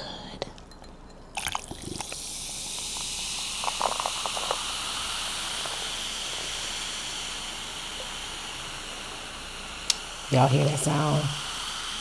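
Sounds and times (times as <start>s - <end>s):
soda fizzing in a cup: 1.3s - 12.0s
sharp crackles: 1.8s - 6.5s.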